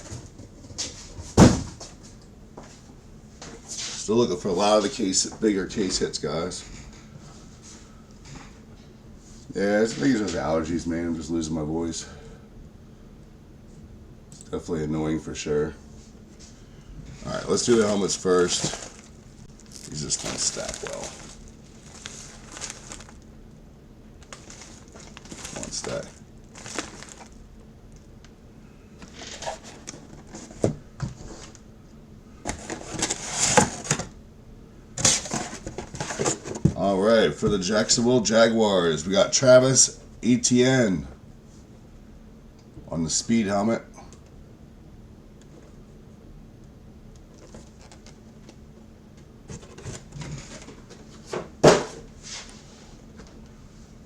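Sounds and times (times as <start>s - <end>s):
boxes knocking and scuffing: 0.0s - 2.8s, 17.3s - 23.2s, 35.0s - 37.7s
boxes scraping: 17.1s - 23.2s, 24.2s - 27.4s, 29.0s - 31.6s, 32.5s - 34.1s, 35.0s - 36.9s
helmet cases rustling: 17.2s - 23.2s, 24.2s - 27.4s.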